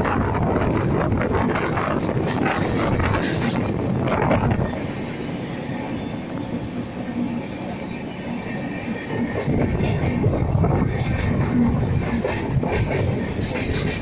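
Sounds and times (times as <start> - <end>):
train rumbling on rails: 0.0 - 14.0
train wheels clattering: 0.0 - 14.0.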